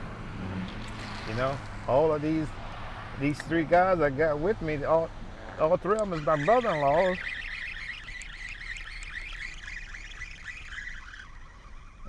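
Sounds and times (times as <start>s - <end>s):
animals chirping in chorus: 5.4s - 12.0s.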